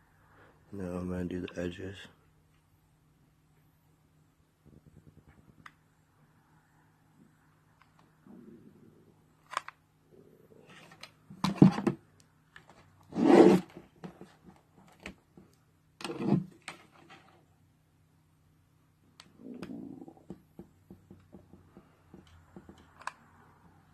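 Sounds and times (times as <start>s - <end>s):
faint low hum: 0.0s - 23.9s
hands scraping plastic: 12.6s - 15.1s.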